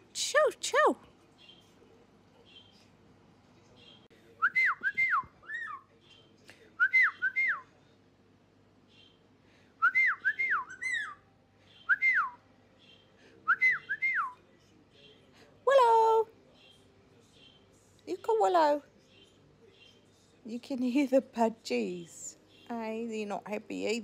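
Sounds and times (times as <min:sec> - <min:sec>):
budgies chirping faintly: 0:00.4 - 0:04.4, 0:05.1 - 0:07.8, 0:08.8 - 0:20.7
parrot whistling: 0:09.9 - 0:11.2.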